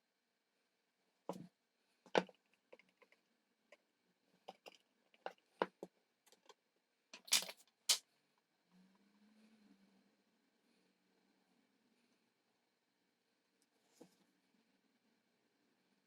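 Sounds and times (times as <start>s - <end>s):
electronic parts clicking and tapping: 7.2s - 7.6s.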